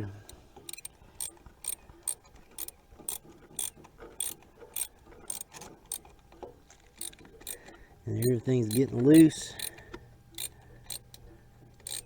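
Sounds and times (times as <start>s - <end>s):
ratchet wrench clicking: 0.7s - 6.0s, 8.2s - 9.8s, 10.4s - 11.2s, 11.8s - 12.0s.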